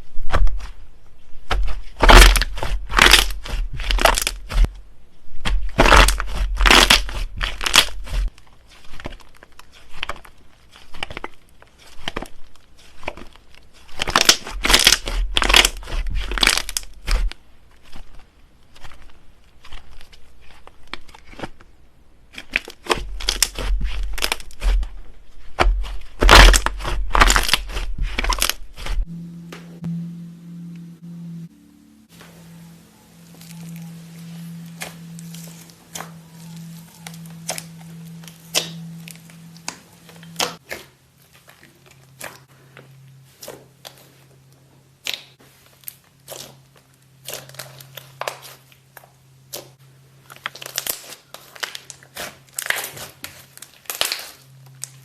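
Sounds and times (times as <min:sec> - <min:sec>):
slime crackling and popping: 0:01.5 - 0:04.7, 0:05.4 - 0:21.5, 0:22.3 - 0:24.9, 0:25.5 - 0:29.0, 0:33.2 - 0:40.7, 0:45.0 - 0:48.8, 0:50.3 - 0:55.0.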